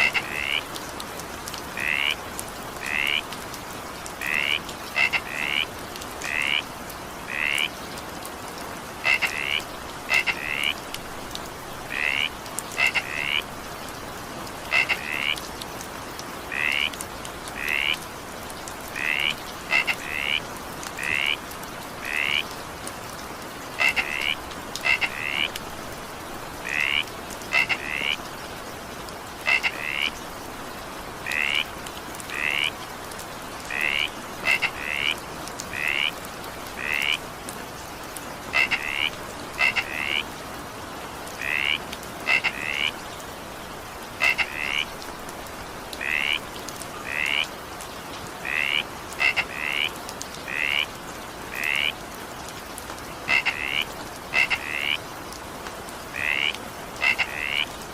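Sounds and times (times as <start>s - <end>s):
frogs calling: 0.0s - 0.8s, 1.7s - 2.2s, 2.8s - 3.3s, 4.2s - 6.7s, 7.3s - 7.8s, 9.0s - 10.8s, 11.9s - 13.5s, 14.6s - 15.4s, 16.4s - 18.0s, 18.8s - 22.6s, 23.7s - 25.6s, 26.5s - 28.3s, 29.4s - 30.2s, 31.2s - 32.8s, 33.6s - 37.2s, 38.4s - 40.3s, 41.4s - 43.0s, 44.2s - 45.0s, 46.0s - 47.6s, 48.4s - 52.0s, 53.2s - 55.0s, 56.1s - 57.8s
steady rain: 0.0s - 57.9s.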